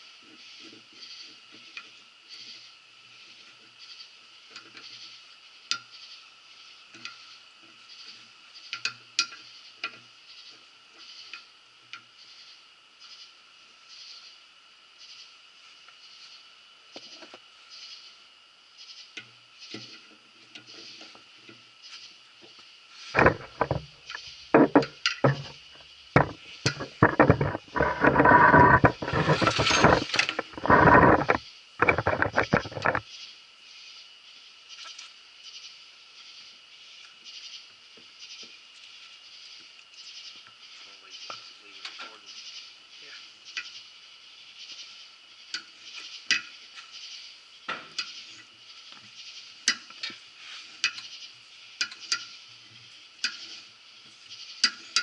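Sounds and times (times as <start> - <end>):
steady high hiss: 0.0 - 55.0
metal scraping: 23.1 - 33.0.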